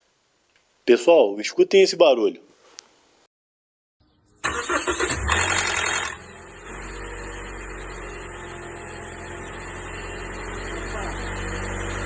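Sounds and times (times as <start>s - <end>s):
loud engine start noise: 4.4s - 8.2s
car engine idling: 4.4s - 12.0s.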